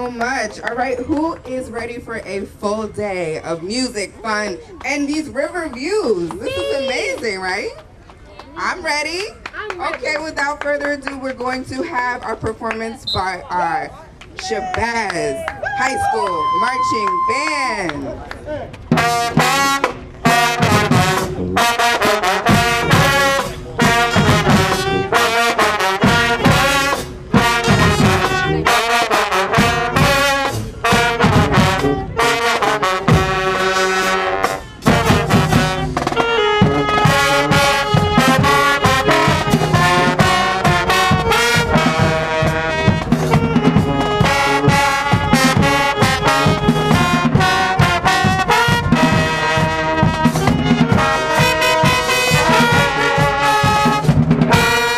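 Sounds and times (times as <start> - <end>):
driving drum beat: 18.8 - 54.9
brass horns playing: 18.9 - 54.9.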